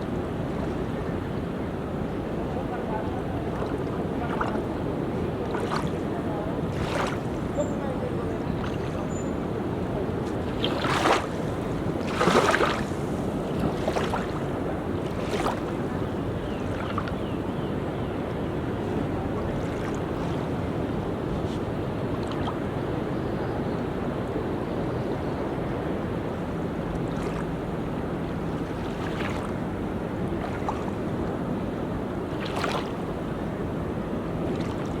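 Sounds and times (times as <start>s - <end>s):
waves and surf: 0.0s - 35.0s
water splashes: 2.3s - 17.3s, 18.7s - 22.7s, 26.8s - 33.5s, 34.3s - 35.0s.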